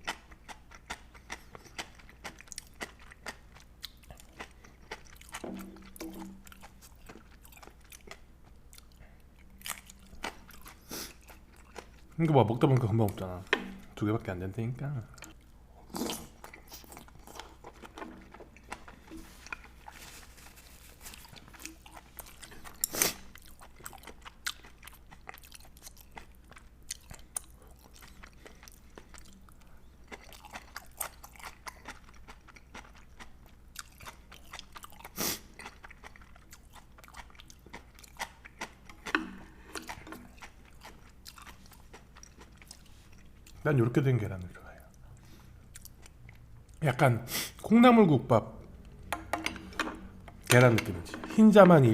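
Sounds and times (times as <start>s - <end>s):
person chewing and crunching food: 0.0s - 14.0s, 14.9s - 43.6s, 44.6s - 46.8s.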